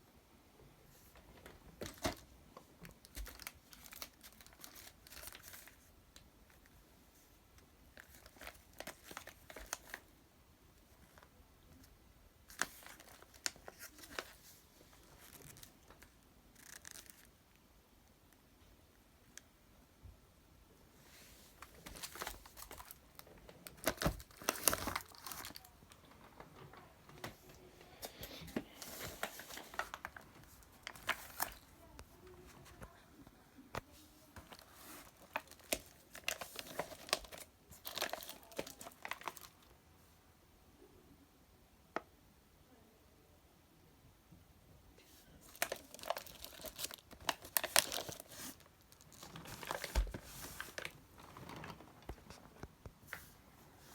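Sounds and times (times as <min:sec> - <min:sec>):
packaging crinkling: 0:01.8 - 0:05.8, 0:12.5 - 0:17.3, 0:21.6 - 0:27.3, 0:28.8 - 0:31.7, 0:34.4 - 0:39.6, 0:45.4 - 0:52.4.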